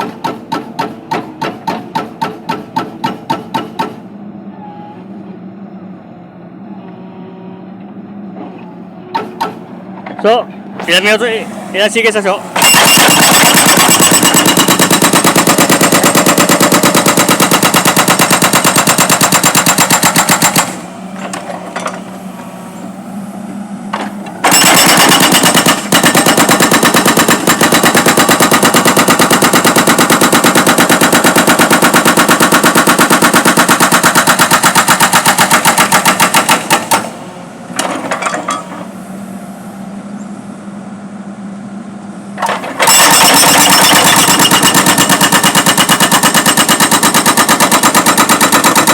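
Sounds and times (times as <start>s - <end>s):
hydraulic breaker hammering: 0.0s - 4.1s, 9.1s - 22.2s, 23.9s - 38.9s, 42.4s - 48.9s
backhoe engine running: 0.0s - 48.9s.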